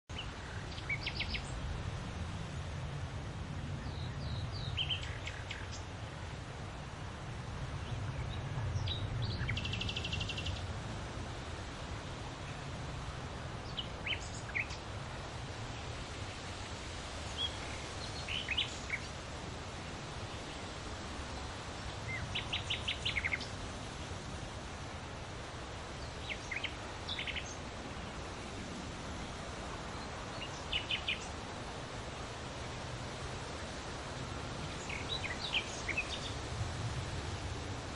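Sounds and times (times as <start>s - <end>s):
small birds chirping: 0.1s - 2.0s, 3.6s - 6.0s, 7.8s - 10.7s, 13.6s - 20.8s, 21.4s - 24.6s, 25.7s - 31.8s, 34.6s - 36.5s
wind rustling large leaves: 0.1s - 37.9s.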